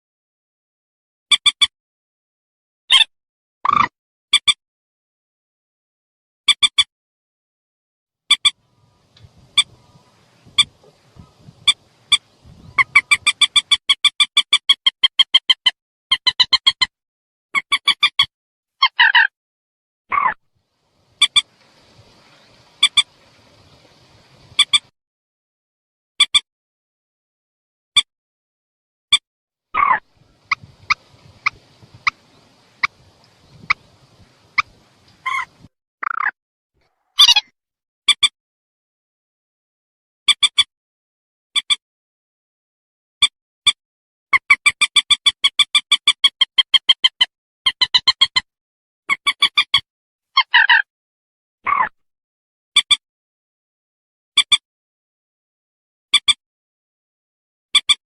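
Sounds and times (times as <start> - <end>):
rail bird calling sharp notes: 8.3 - 14.4, 21.0 - 24.9, 29.8 - 36.2.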